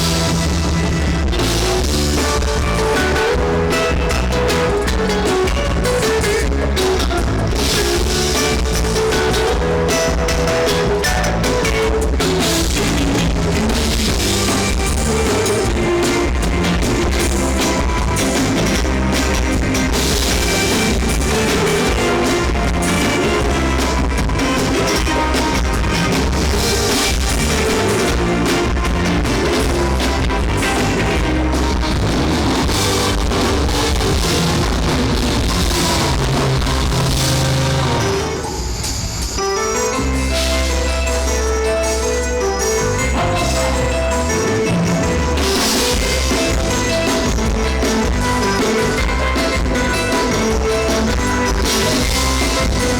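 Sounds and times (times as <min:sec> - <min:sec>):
live rock band playing: 0:00.0 - 0:52.9
person singing: 0:02.2 - 0:32.0.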